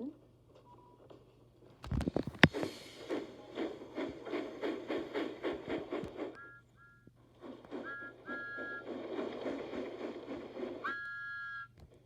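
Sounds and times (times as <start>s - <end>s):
steam train chuffing: 2.4s - 6.6s, 7.3s - 11.7s
two-note train whistle toots: 7.7s - 8.9s, 10.8s - 11.8s.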